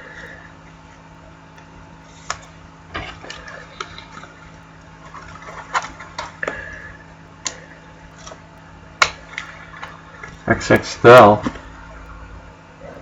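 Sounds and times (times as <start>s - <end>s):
cards rustling: 5.0s - 6.6s.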